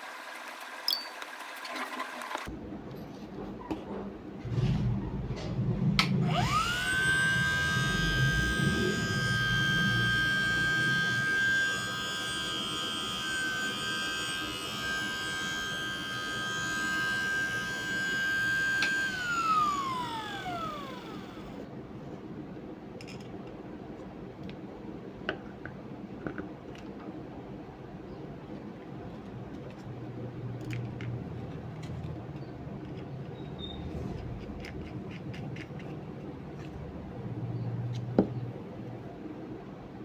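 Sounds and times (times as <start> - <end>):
air cooler motor whining: 6.0 - 21.6.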